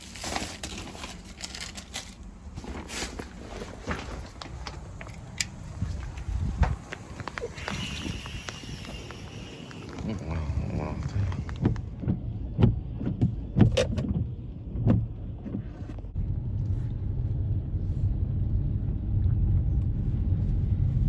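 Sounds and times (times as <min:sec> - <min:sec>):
car engine low rumble: 0:00.0 - 0:21.0
knocks and clicks: 0:11.0 - 0:16.1.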